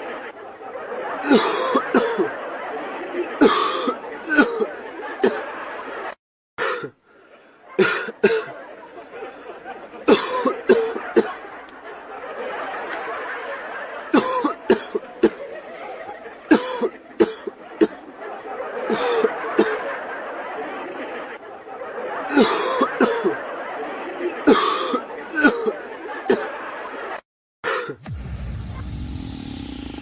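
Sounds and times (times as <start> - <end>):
person coughing: 3.4 - 5.4.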